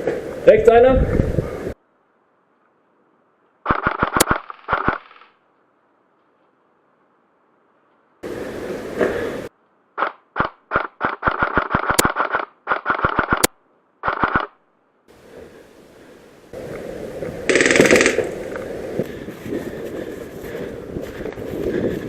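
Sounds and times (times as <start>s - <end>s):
airsoft gun firing: 17.5s - 18.6s.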